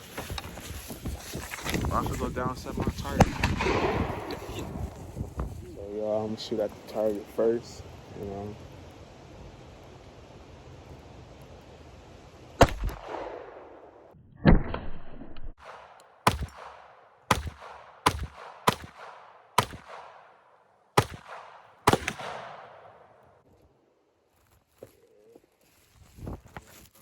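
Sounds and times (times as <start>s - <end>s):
pistol shots echoing: 3.1s - 4.5s, 12.6s - 14.0s, 15.6s - 23.2s.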